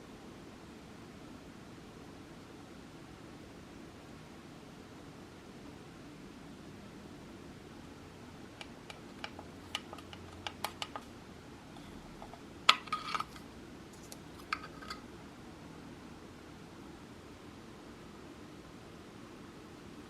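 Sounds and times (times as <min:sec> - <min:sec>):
faint steady hiss: 0:00.0 - 0:20.0
light clicks and taps: 0:08.6 - 0:11.1.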